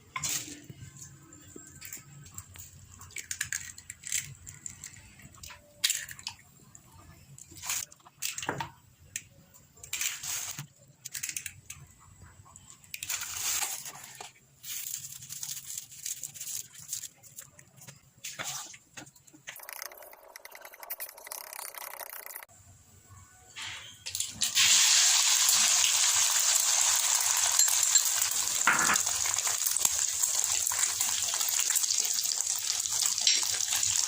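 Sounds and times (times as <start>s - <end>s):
food scraping and crackling: 0.1s - 6.3s, 9.8s - 22.5s.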